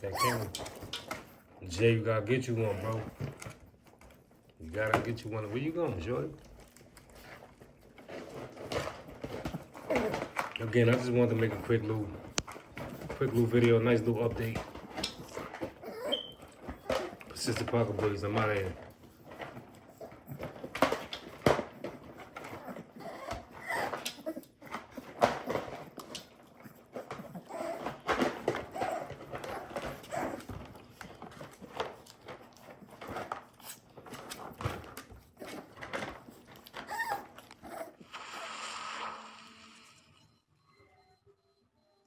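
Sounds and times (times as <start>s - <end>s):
puppies whimpering and yipping: 0.0s - 1.6s, 8.2s - 38.4s.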